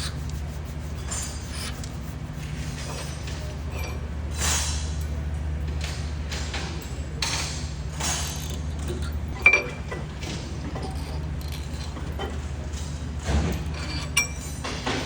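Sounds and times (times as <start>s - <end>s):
steady low hum: 0.0s - 15.0s
metal parts clinking and scraping: 10.8s - 15.0s.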